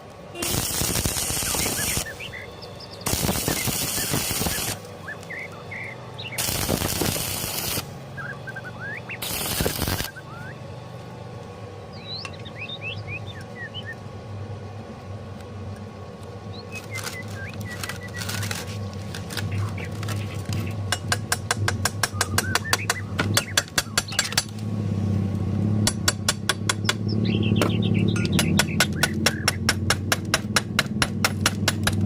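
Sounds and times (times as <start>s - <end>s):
welding arc crackling: 0.0s - 8.0s, 9.0s - 10.4s, 16.7s - 22.9s
low steady hum: 0.0s - 32.0s
birds chirping: 0.2s - 24.5s, 26.7s - 29.8s.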